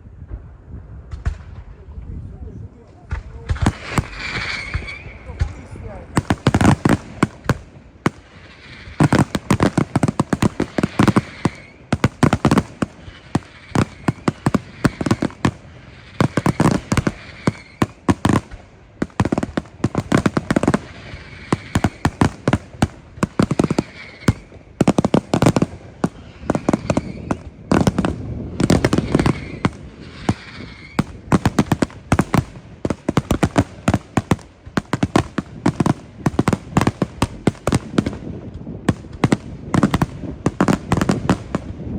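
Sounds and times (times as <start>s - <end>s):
fireworks bangs and crackling: 0.0s - 2.0s, 2.8s - 41.9s.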